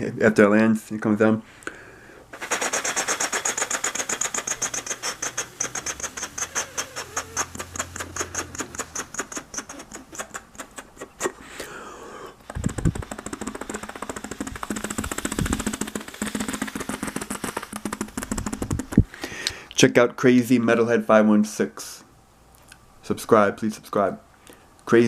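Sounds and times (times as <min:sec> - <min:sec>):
person imitating helicopter chopping: 0:02.4 - 0:19.1
deep mouth thumps: 0:12.4 - 0:19.1.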